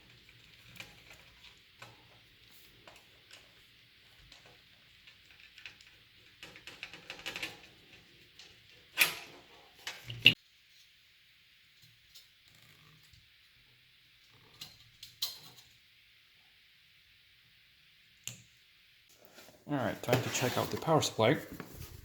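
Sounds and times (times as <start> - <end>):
computer hardware clicks and rattles: 0.0 - 10.4.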